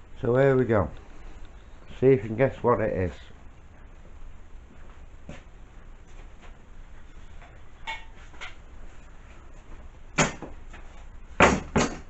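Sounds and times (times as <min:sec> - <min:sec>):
sharp knock: 0:11.4 - 0:12.0.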